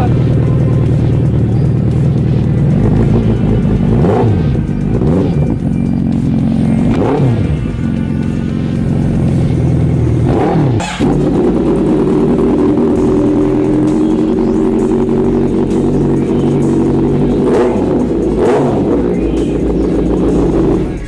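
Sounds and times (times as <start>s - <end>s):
motorcycle engine revving: 0.0s - 21.0s.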